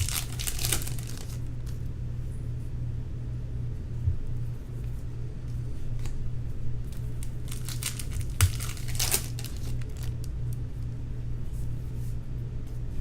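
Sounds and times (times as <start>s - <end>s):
wrapper crinkling and tearing: 0.0s - 1.5s, 7.2s - 10.3s
steady low hum: 0.0s - 13.0s.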